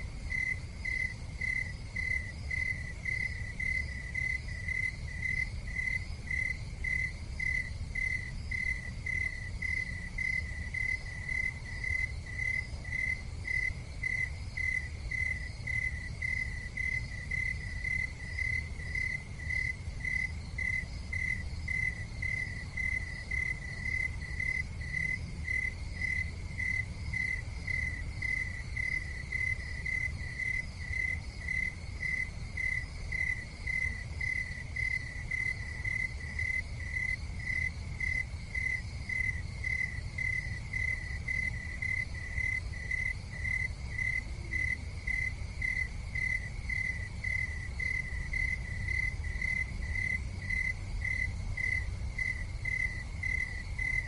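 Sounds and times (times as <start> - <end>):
cricket chirping: 0.0 - 54.0.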